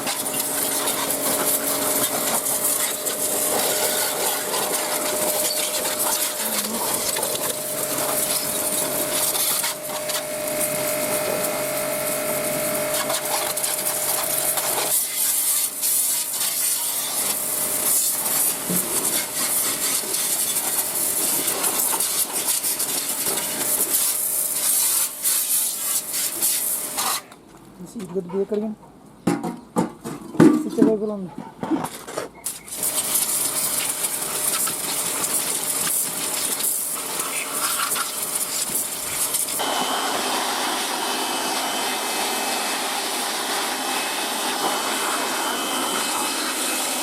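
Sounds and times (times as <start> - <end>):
brush scrubbing steel: 0.0 - 10.8, 12.9 - 27.3, 32.8 - 39.6.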